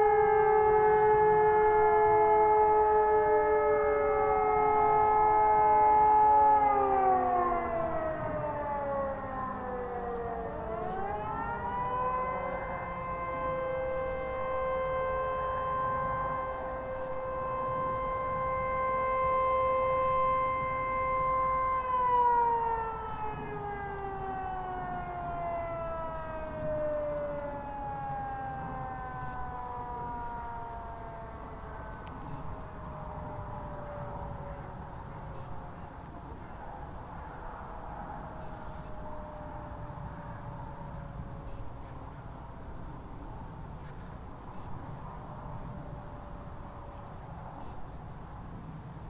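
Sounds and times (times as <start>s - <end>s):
distant civil defence sirens: 0.0s - 49.0s.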